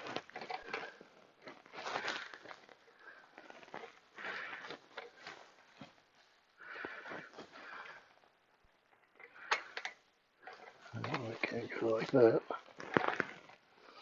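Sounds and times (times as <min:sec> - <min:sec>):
breathing and sniffing: 0:01.7 - 0:05.6, 0:06.6 - 0:08.2.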